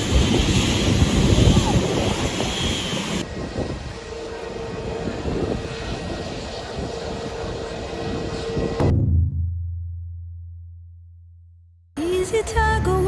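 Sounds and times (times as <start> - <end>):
airliner engines rumbling with whine: 0.0 - 8.8.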